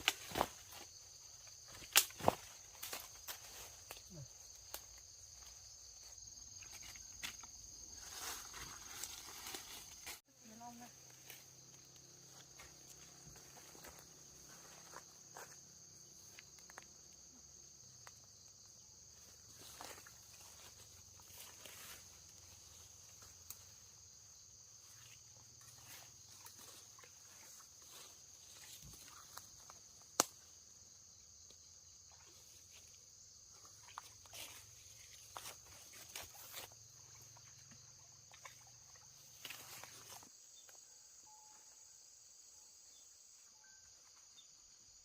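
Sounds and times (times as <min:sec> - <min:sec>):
insects chirring: 0:00.0 - 0:45.0.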